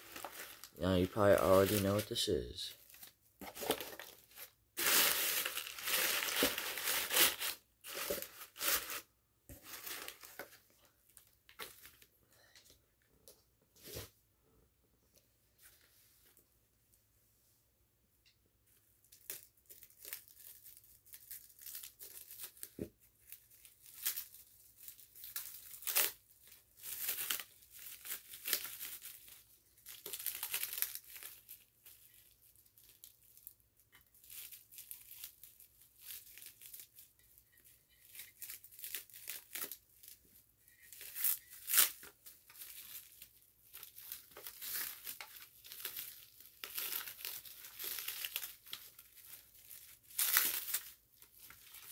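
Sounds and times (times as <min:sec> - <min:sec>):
packaging tearing and crinkling: 0:00.0 - 0:10.6, 0:19.1 - 0:33.5, 0:34.1 - 0:37.2, 0:38.0 - 0:51.9.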